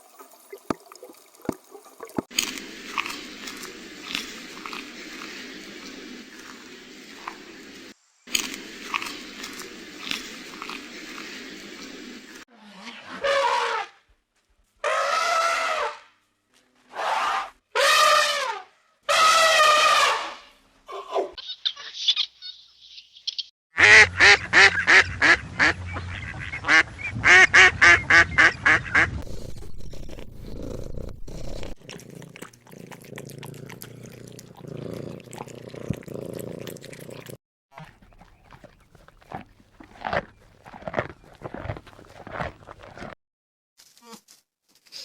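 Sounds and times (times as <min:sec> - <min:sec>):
cat purring: 0:30.2 - 0:43.2.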